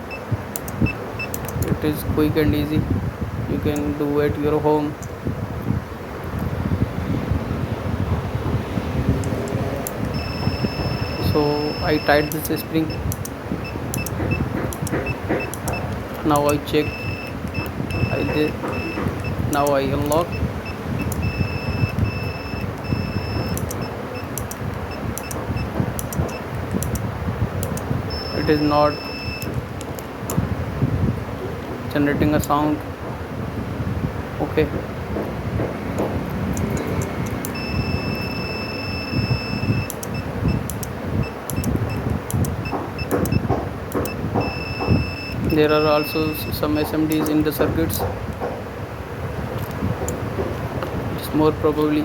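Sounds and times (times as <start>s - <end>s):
steady low rumble: 0.0s - 52.0s
sharp clicks: 0.5s - 1.9s, 9.2s - 30.4s, 36.0s - 48.6s, 49.6s - 50.9s
alarm buzzer beeping: 10.0s - 26.5s, 28.0s - 29.6s, 37.5s - 47.3s.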